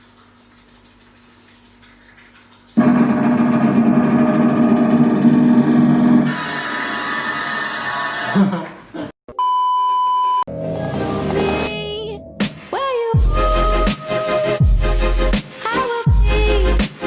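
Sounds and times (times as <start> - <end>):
loud music with layered tones: 10.7 - 17.0.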